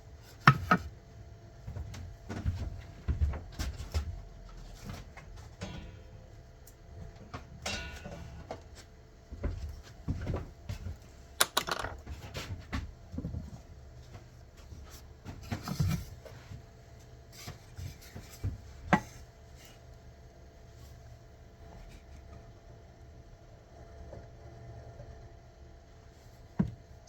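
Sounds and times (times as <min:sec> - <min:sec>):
wooden workpieces and tools clattering: 0:11.4 - 0:12.1.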